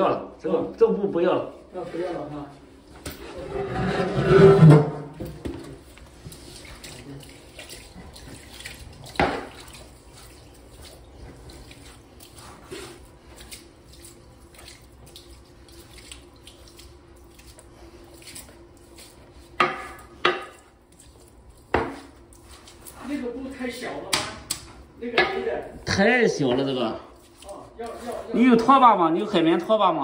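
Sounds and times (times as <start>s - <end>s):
water splashing and trickling: 3.6s - 29.7s
small clicks and drips: 5.2s - 23.1s.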